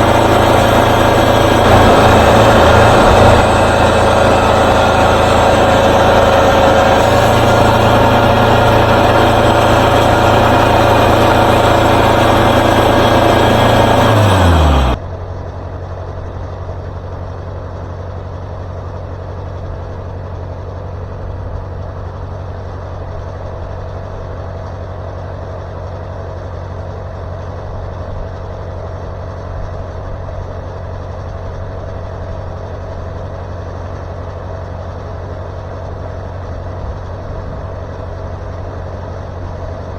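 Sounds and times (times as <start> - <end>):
sawmill running: 0.0 - 15.0.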